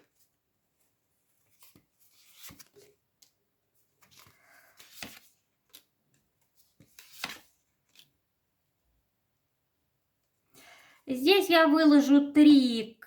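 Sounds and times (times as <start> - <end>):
cards being shuffled: 1.5 - 3.4, 4.0 - 5.9, 6.5 - 8.2.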